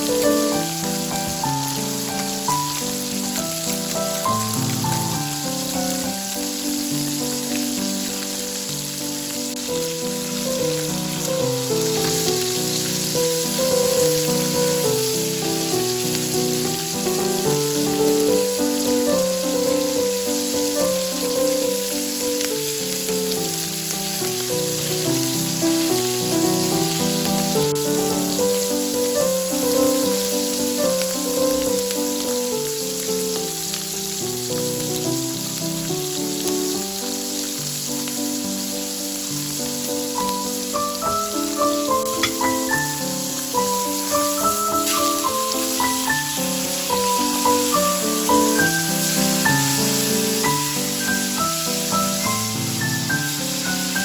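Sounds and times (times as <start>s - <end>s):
food sizzling in a pan: 0.0s - 54.0s
gentle background music: 0.0s - 54.0s.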